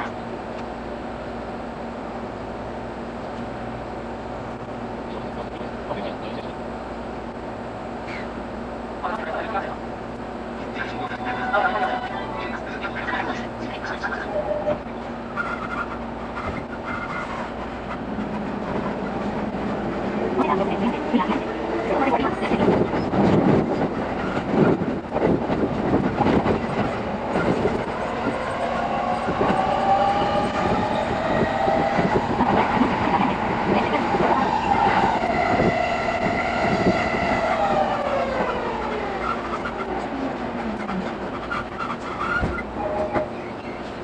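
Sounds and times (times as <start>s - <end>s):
electric train motor whine: 27.4s - 39.2s.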